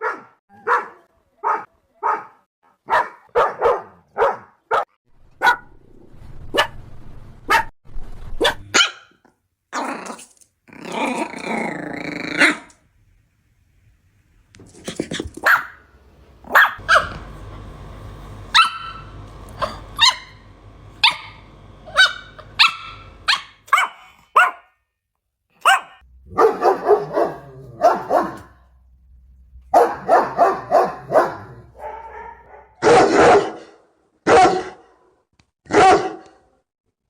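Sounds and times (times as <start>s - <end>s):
dogs barking: 0.0s - 5.7s, 8.4s - 9.1s, 15.4s - 17.5s, 18.4s - 24.7s, 25.6s - 28.7s, 29.7s - 33.7s, 34.3s - 34.8s, 35.7s - 36.3s.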